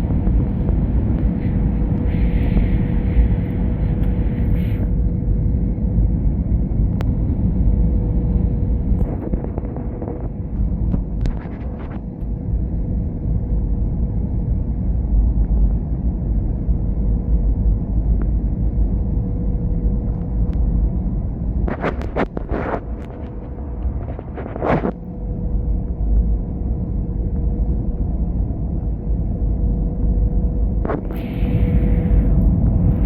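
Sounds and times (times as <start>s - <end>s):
airplane rumbling: 0.0s - 33.0s.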